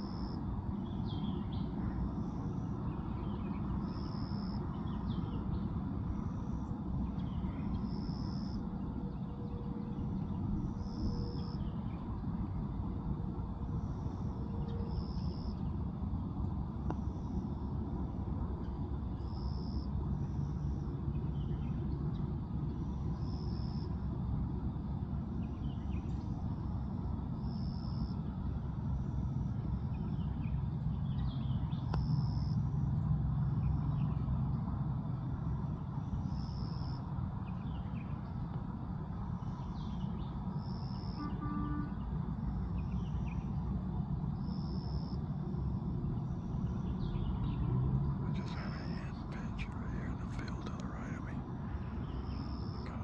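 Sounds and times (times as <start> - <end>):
steady low rumble: 46.4 - 53.0
faint bird chirps: 48.2 - 53.0.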